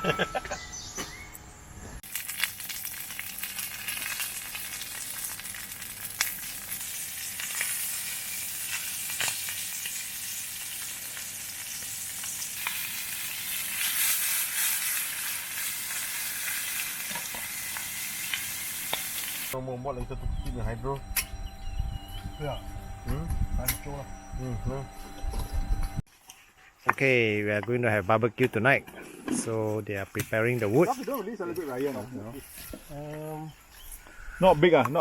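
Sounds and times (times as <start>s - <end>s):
food sizzling with crackles: 2.0s - 19.6s.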